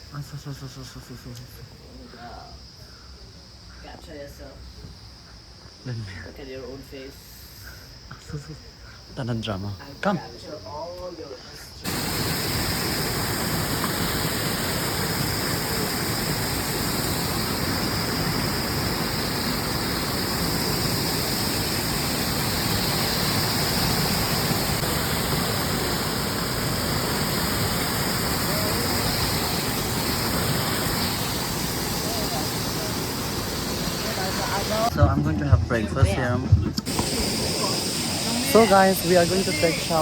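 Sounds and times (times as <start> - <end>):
water rushing: 11.9 - 35.0, 36.8 - 40.0.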